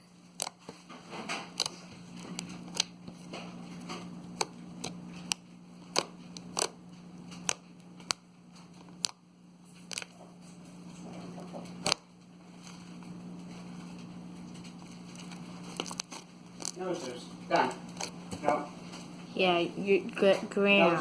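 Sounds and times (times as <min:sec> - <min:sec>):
steady low hum: 0:00.0 - 0:21.0
slime clicking and popping: 0:04.4 - 0:06.8.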